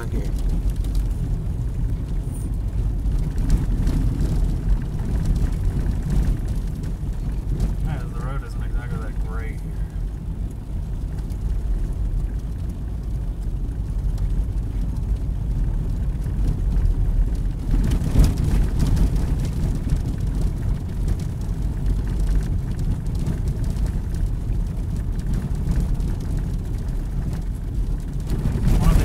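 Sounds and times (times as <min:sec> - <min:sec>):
car rumbling over rough road: 0:00.0 - 0:29.0.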